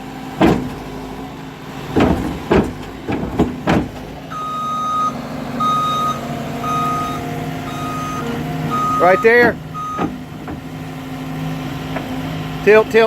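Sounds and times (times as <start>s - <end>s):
skid steer engine running: 0.0s - 13.0s
loud knocks: 0.4s - 0.9s, 1.9s - 4.1s, 9.4s - 10.8s
backup alarm beeping: 4.3s - 10.2s.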